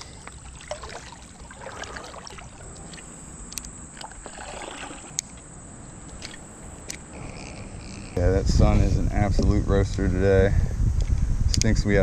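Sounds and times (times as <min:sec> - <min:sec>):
paddle splashing in water: 0:00.0 - 0:03.3, 0:03.9 - 0:05.2.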